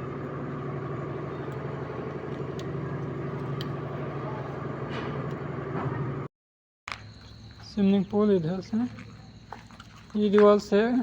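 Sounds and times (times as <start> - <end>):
engine humming steadily: 0.0 - 6.3.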